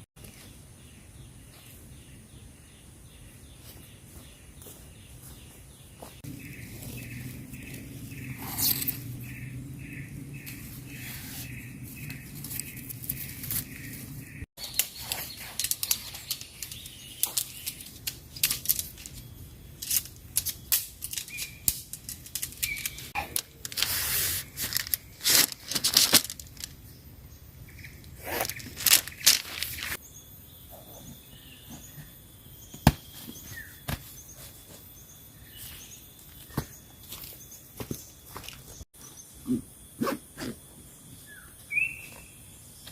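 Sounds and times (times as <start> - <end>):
crackling and rustling: 6.1 - 26.9, 27.9 - 30.0.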